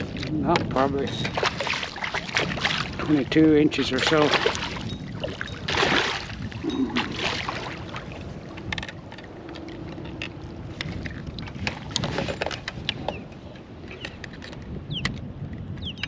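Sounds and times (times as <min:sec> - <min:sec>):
fish thrashing water splashing: 0:01.0 - 0:08.6
small clicks and knocks: 0:08.5 - 0:16.0.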